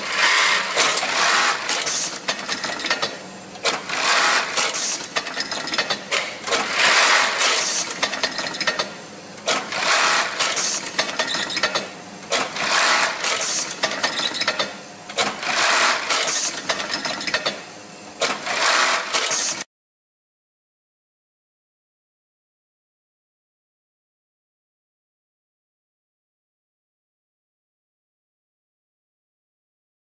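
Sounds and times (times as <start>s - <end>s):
industrial sewing machine stitching: 0.0s - 19.7s.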